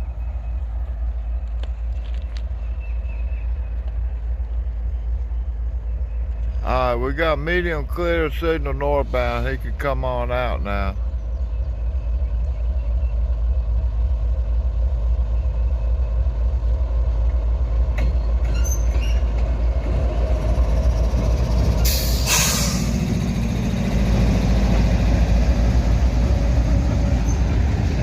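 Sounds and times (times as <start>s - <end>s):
locomotive engine rumble: 0.0s - 28.0s
air hiss: 21.8s - 23.0s.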